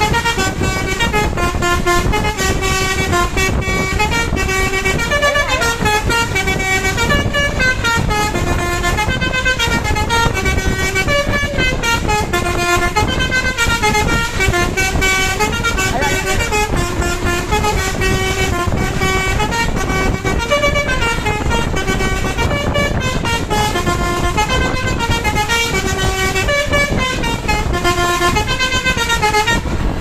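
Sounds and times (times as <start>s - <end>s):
multi-tone bus air horn melody: 0.0s - 30.0s
steady low rumble: 0.0s - 30.0s.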